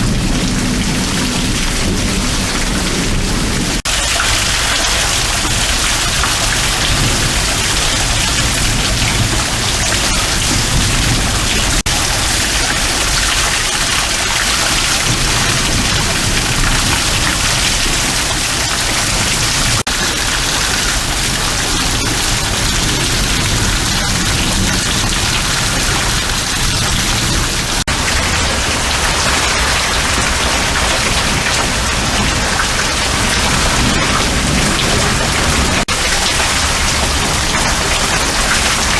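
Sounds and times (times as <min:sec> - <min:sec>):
heavy rain downpour: 0:00.0 - 0:38.9.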